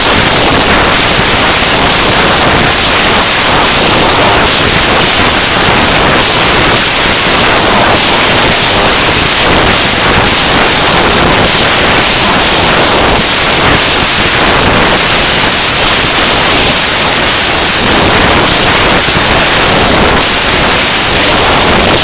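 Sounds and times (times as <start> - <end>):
static-like noise music: 0.0 - 22.0.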